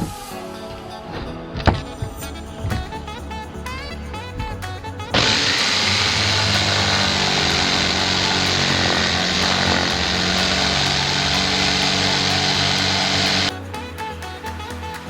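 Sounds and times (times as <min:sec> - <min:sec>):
electric power tool running: 0:05.1 - 0:13.5.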